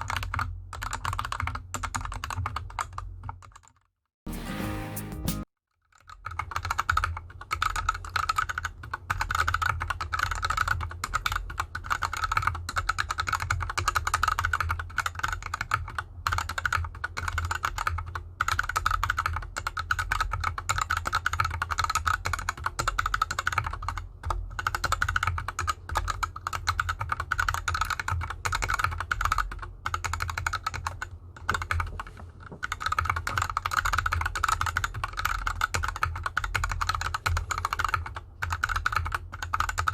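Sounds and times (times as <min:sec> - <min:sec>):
fast typing on mechanical keyboard: 0:00.0 - 0:03.9, 0:05.8 - 0:39.9.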